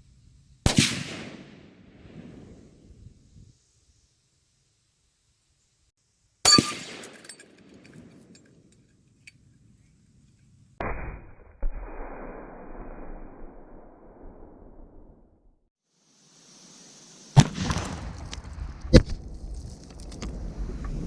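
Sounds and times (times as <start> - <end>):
gunshot with metallic ringing: 6.5 - 7.6
dull explosive blast: 10.8 - 15.4, 17.4 - 19.6.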